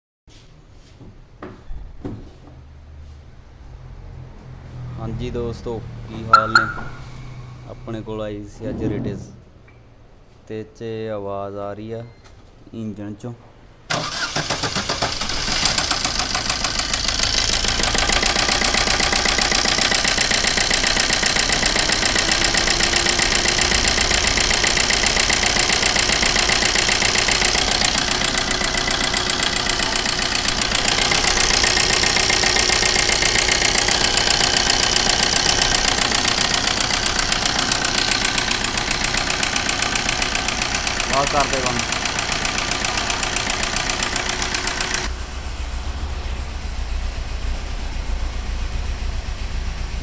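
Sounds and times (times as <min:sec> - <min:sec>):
car engine starting and idling: 0:06.1 - 0:07.6, 0:13.9 - 0:50.0
engine knocking: 0:13.9 - 0:50.0.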